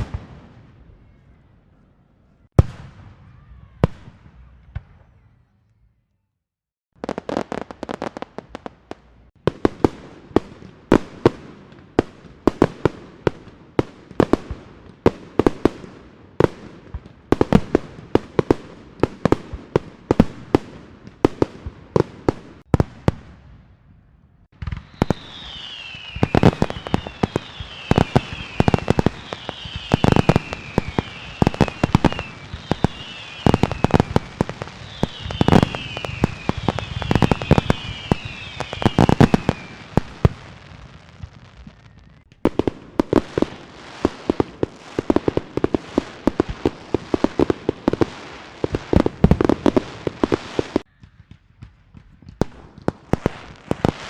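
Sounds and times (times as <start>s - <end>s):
heavy firework booms: 0.0s - 0.9s, 7.0s - 54.0s
firecrackers banging and crackling: 24.5s - 54.0s
falling firework whistles: 24.6s - 40.6s
fireworks hiss: 24.6s - 42.1s.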